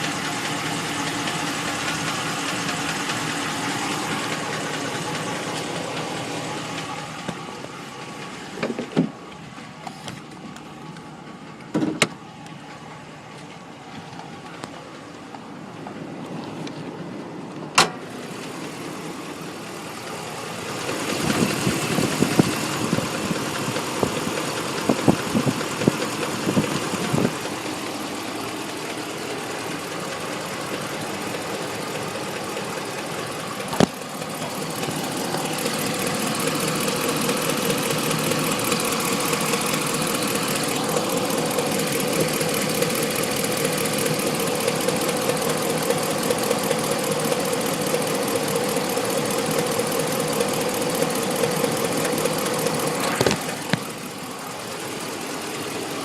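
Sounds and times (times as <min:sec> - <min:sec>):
truck engine running: 0:00.0 - 0:56.0.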